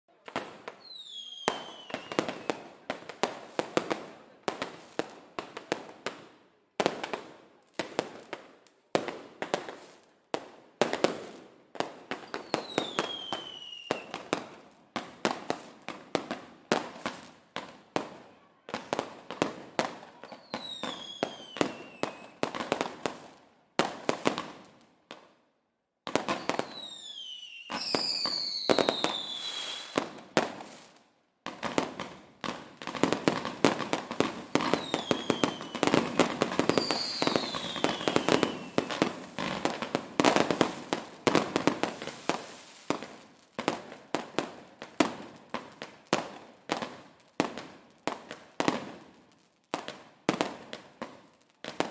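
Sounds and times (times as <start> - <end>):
fireworks bangs and crackling: 0.1 - 25.4, 26.0 - 51.9
whistling firework shells: 0.7 - 2.7, 12.2 - 14.3, 20.3 - 22.4, 26.2 - 30.0, 34.6 - 39.2.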